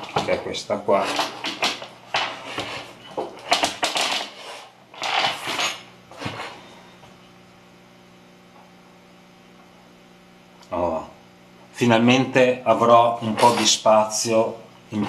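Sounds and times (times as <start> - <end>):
faint steady hum: 0.0 - 15.0
keyboards clattering on a desk: 1.0 - 4.4, 5.0 - 6.4.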